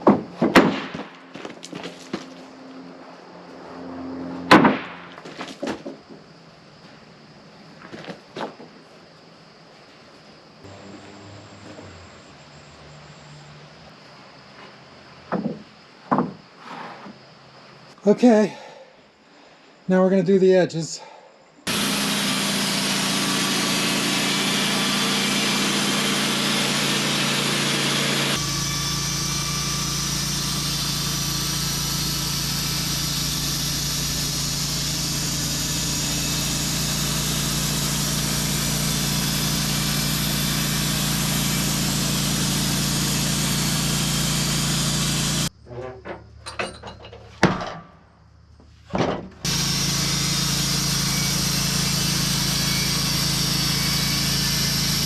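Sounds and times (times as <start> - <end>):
sawmill blade cutting wood: 0.0 - 6.0, 21.7 - 45.5, 49.4 - 55.0
knocks and clatter: 15.3 - 16.4, 45.8 - 48.0.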